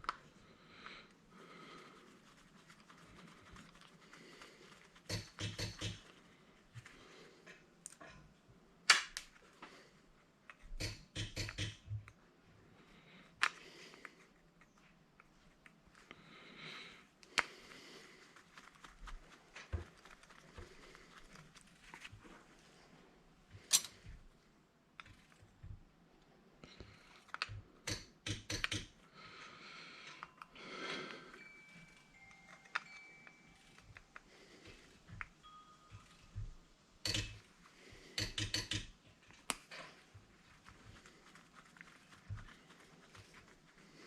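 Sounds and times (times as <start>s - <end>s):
hand tools and metal parts clicking: 5.1s - 6.1s, 10.7s - 12.0s, 23.6s - 24.0s, 27.2s - 29.0s, 37.0s - 40.0s.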